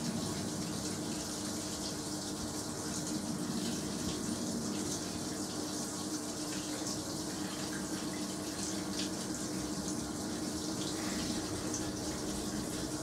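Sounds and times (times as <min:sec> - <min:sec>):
washing machine low hum: 0:00.0 - 0:13.0.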